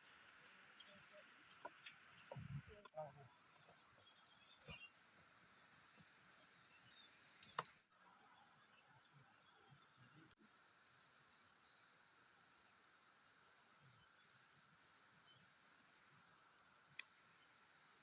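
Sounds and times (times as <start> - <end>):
outdoor hush: 0.0 - 18.0.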